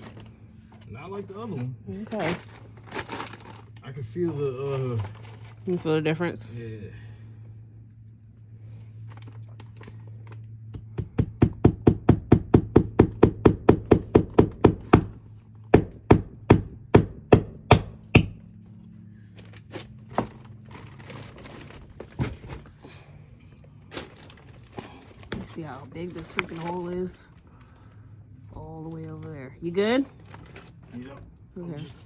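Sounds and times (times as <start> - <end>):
steady low hum: 0.0 - 32.0
hammer striking: 10.8 - 18.4.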